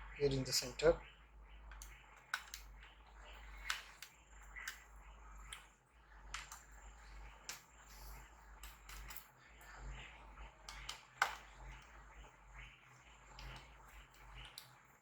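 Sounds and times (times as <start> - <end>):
small laptop parts clicking: 1.7 - 5.7, 6.3 - 6.8, 7.4 - 9.4, 10.7 - 11.9, 13.3 - 14.8.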